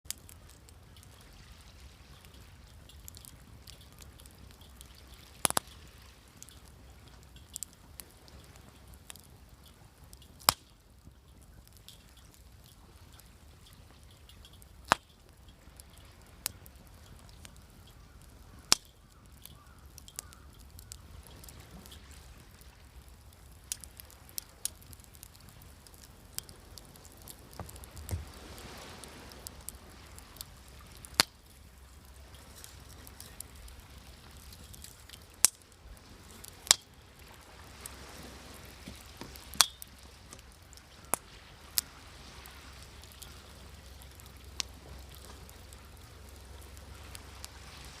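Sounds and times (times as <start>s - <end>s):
wood fire crackling: 0.0s - 48.0s
sea waves: 0.1s - 10.7s, 21.0s - 48.0s
fire pops: 2.1s - 48.0s.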